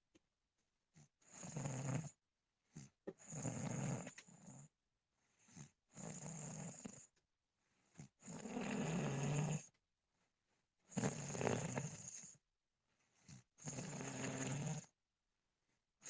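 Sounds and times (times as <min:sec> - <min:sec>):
person snoring: 0:01.3 - 0:02.2, 0:02.8 - 0:04.7, 0:05.5 - 0:07.1, 0:08.2 - 0:09.7, 0:10.9 - 0:12.4, 0:13.2 - 0:14.9.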